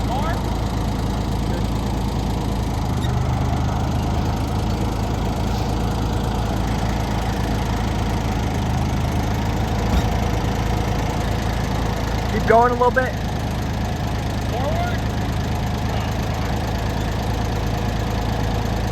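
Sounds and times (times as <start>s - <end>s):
loader engine idling: 0.0s - 18.9s
short knock: 9.9s - 10.3s.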